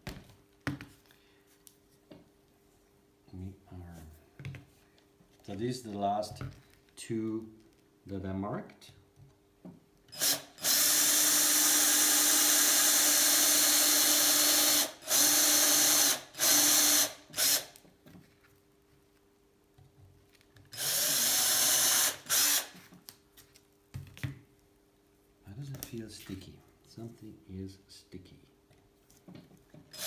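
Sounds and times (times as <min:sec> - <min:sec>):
electric drill boring holes: 0:10.1 - 0:17.8, 0:20.7 - 0:22.8.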